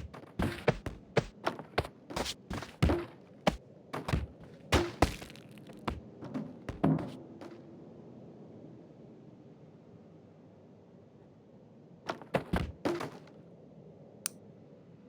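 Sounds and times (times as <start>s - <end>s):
irregular knocks and thuds: 0.0s - 7.2s, 12.1s - 13.2s.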